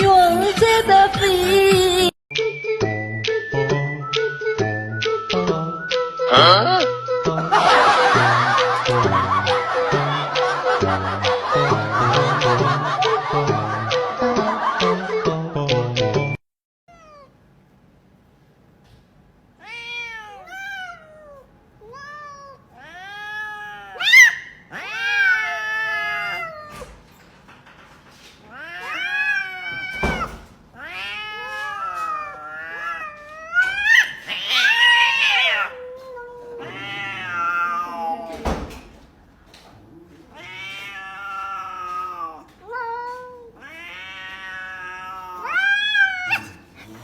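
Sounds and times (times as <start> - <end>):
music: 0.0 - 16.4
cat meowing: 16.9 - 17.4, 19.6 - 27.0, 28.4 - 38.8, 39.9 - 46.9.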